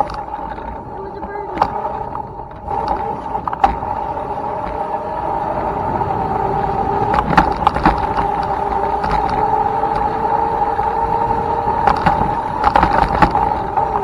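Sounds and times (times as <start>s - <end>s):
bike knocking over bumps: 0.0s - 5.2s, 6.3s - 14.0s
electric motor whining: 0.0s - 14.0s
tyre and wind rumble: 0.0s - 14.0s.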